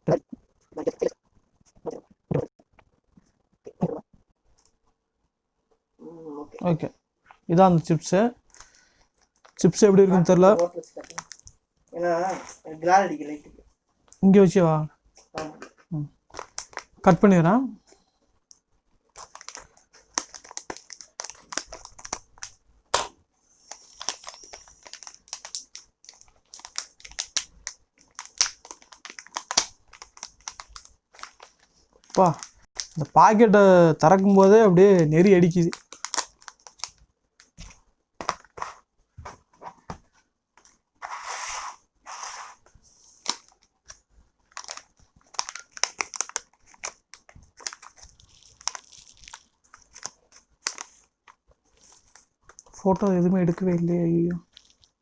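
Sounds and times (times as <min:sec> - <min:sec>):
chip packet crinkling and tearing: 0:10.5 - 0:11.5, 0:16.3 - 0:17.0, 0:19.1 - 0:22.6, 0:23.6 - 0:33.2, 0:34.1 - 0:37.6, 0:43.2 - 0:55.0.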